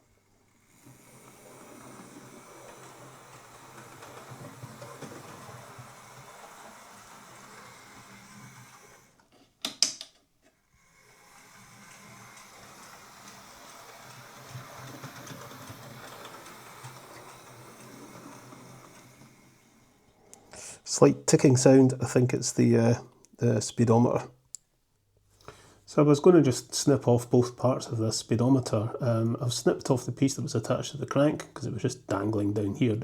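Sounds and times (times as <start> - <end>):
model train motor whirring: 0.1 - 9.3, 10.6 - 20.6.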